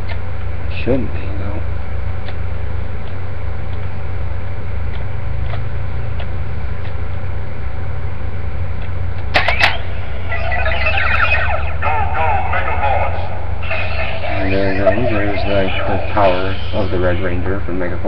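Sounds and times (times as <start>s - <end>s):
steady low electrical hum: 0.0s - 18.0s
toy electronic sound effects: 9.4s - 17.4s
rising electronic chirp: 9.4s - 17.9s.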